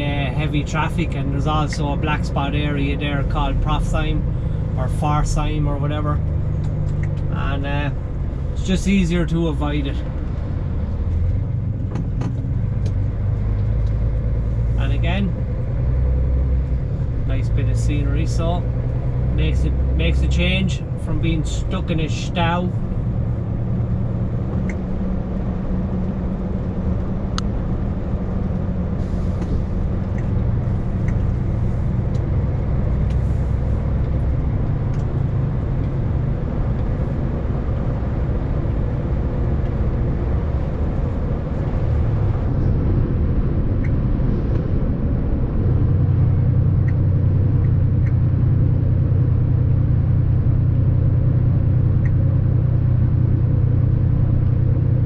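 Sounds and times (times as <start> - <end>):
road noise: 0.0 - 55.0
vehicle engine drone: 0.0 - 55.0.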